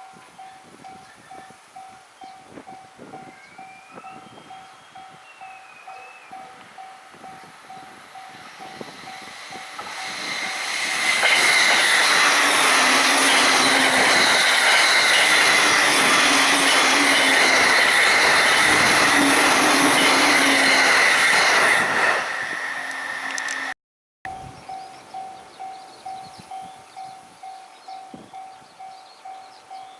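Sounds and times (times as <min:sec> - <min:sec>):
level-crossing bell ringing: 0:00.0 - 0:21.1, 0:24.3 - 0:29.9
high whine of passing train: 0:00.0 - 0:29.9
train wheels rumbling: 0:04.5 - 0:23.7.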